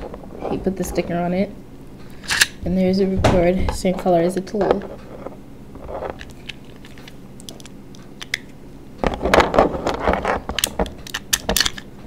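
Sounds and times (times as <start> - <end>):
plastic parts rustling and clattering: 5.8 - 11.9.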